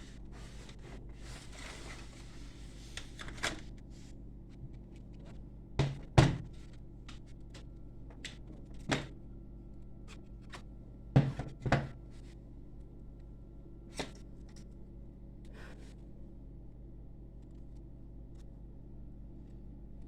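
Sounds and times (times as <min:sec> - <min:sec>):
low electrical hum: 0:00.0 - 0:20.0
objects knocking on workbench: 0:11.2 - 0:12.0.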